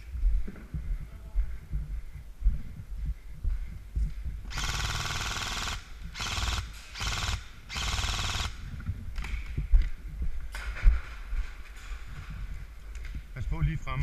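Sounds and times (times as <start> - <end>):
airsoft gun firing bursts: 4.5 - 8.7.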